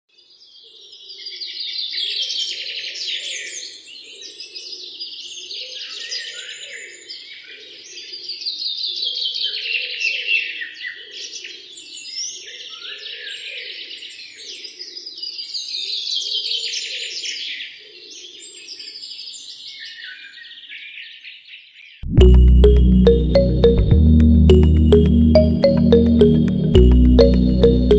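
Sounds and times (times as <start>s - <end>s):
loud music: 22.1s - 27.9s.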